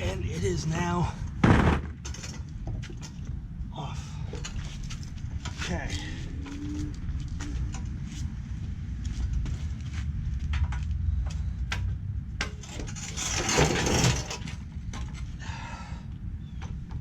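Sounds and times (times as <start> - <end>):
low rumble: 0.0 - 17.0.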